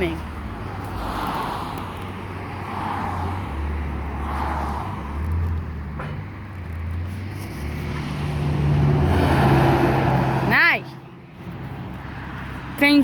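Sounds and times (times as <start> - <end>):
diesel truck engine approaching: 4.8 - 13.0.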